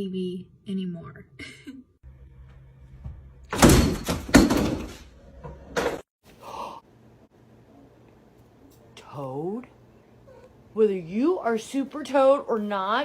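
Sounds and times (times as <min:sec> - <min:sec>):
thuds and bangs in a room: 0:03.0 - 0:06.1.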